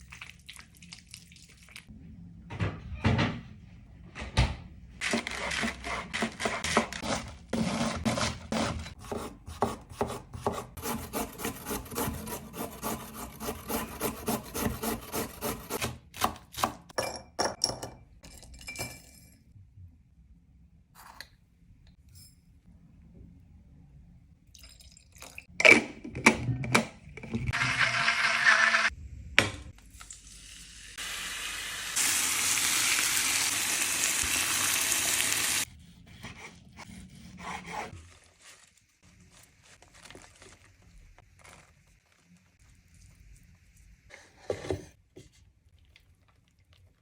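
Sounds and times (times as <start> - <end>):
knife chopping on wooden board: 5.1 - 16.9.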